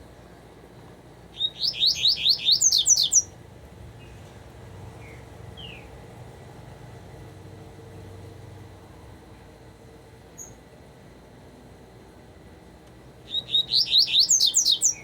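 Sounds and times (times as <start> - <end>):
bird singing rising whistled notes: 1.4 - 3.3, 10.4 - 10.6, 13.3 - 15.0.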